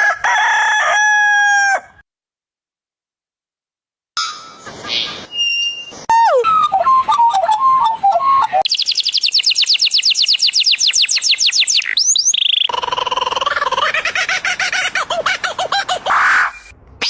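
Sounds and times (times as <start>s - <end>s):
bird trilling whistles: 4.8s - 12.7s
pulsed bird calls: 6.1s - 16.7s.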